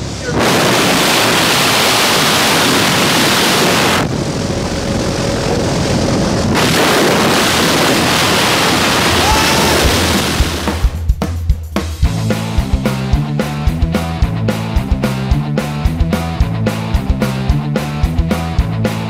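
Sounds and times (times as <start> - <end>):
wind rushing on microphone: 0.0 - 10.9.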